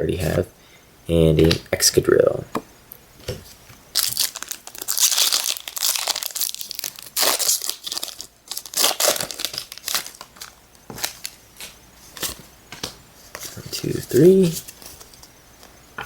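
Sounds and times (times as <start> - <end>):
wrapper crinkling and tearing: 3.9 - 12.4.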